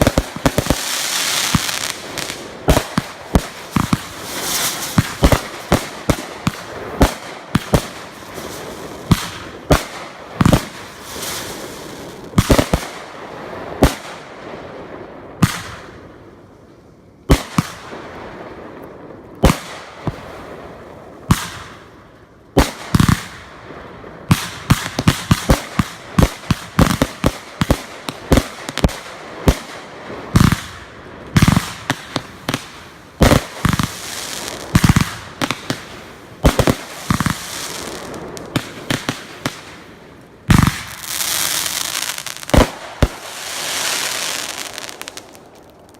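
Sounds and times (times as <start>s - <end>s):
fireworks bangs and crackling: 0.0s - 16.4s, 17.2s - 45.9s.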